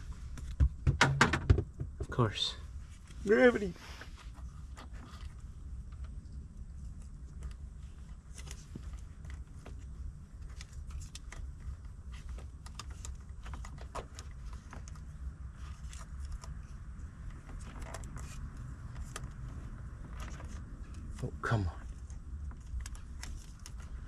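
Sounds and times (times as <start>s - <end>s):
small clicks and crackles of tape: 5.8s - 21.2s, 21.9s - 24.0s.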